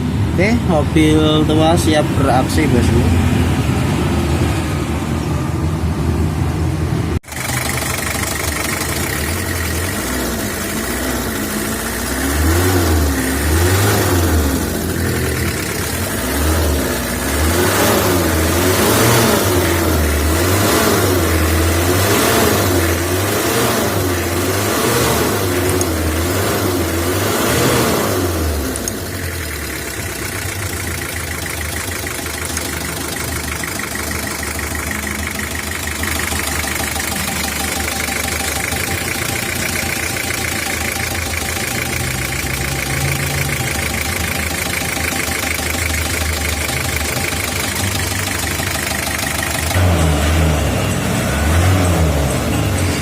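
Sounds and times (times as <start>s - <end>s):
diesel engine running: 0.0s - 53.0s.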